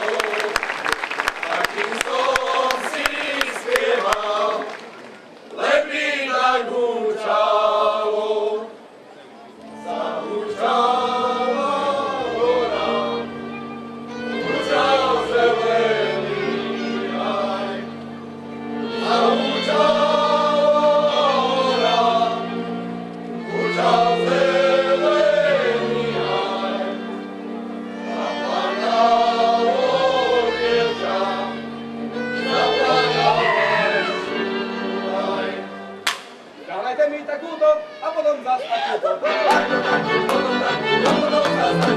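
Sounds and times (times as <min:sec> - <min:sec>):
group singing folk song: 0:01.3 - 0:09.0, 0:09.7 - 0:36.5, 0:39.1 - 0:41.9
instrumental accompaniment with bass: 0:09.7 - 0:36.5, 0:39.3 - 0:41.9.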